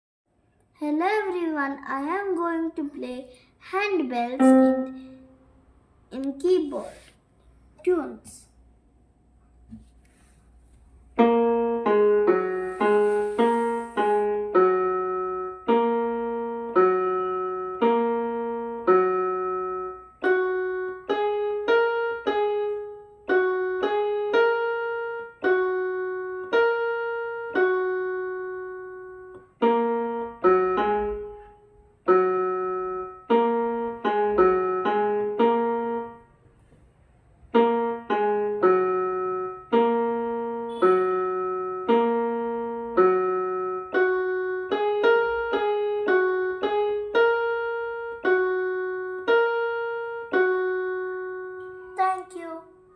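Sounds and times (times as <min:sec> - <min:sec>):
electronic keyboard handbell melody: 0:04.4 - 0:05.3.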